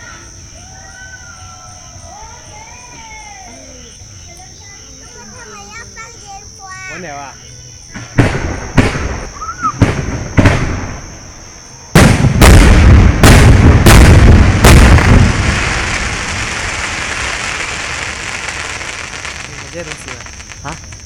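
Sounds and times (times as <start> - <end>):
fireworks bangs: 7.9 - 21.0.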